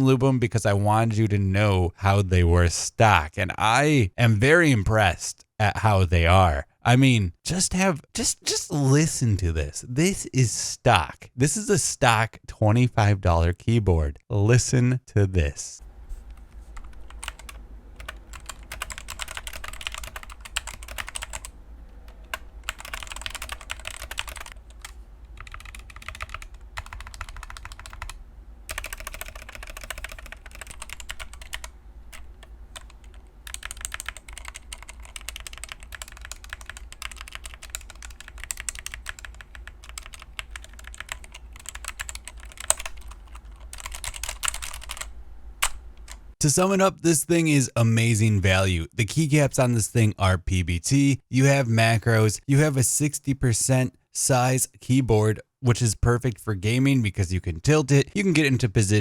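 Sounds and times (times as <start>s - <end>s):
fast keyboard typing: 16.8s - 46.2s.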